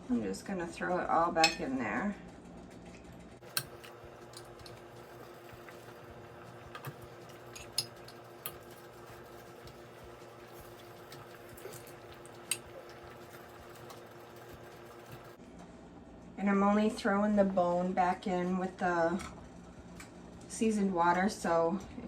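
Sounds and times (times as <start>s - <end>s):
steady low hum: 0.0s - 22.0s
utensil clinking against pot: 6.6s - 9.8s.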